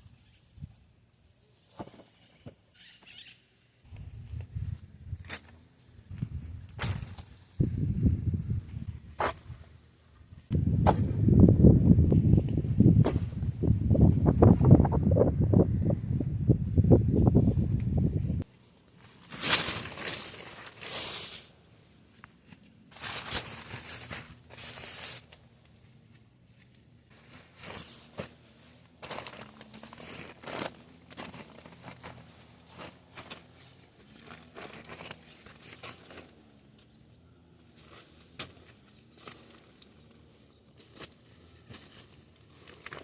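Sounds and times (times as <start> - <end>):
rustling and crinkling: 3.9 - 11.2, 17.7 - 43.0.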